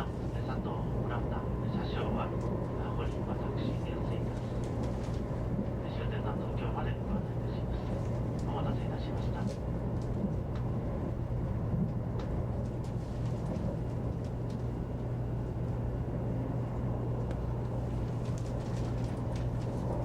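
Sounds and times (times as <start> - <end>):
low train cabin hum: 0.0 - 20.0.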